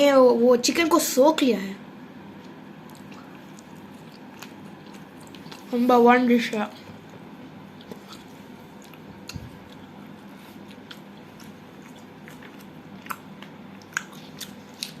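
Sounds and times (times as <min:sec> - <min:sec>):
chewing with wet mouth clicks: 0:02.4 - 0:05.8, 0:06.9 - 0:15.0.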